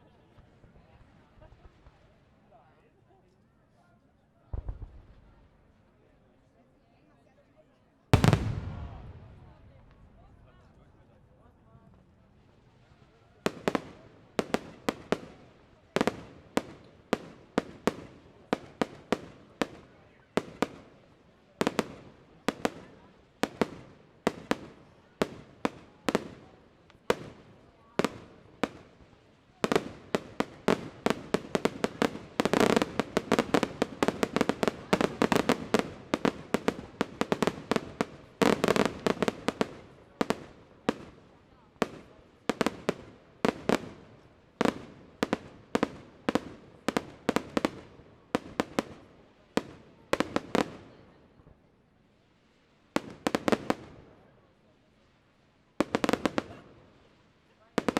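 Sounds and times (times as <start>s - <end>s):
fireworks bangs: 4.5s - 5.4s, 8.2s - 10.3s, 21.6s - 49.0s.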